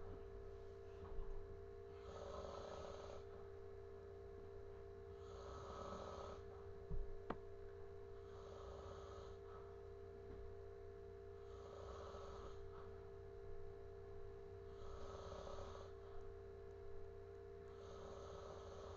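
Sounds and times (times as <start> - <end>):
faint hum: 0.0 - 18.9
person snoring: 5.2 - 6.4, 8.3 - 9.4, 11.4 - 12.7, 14.7 - 15.9, 17.8 - 18.9.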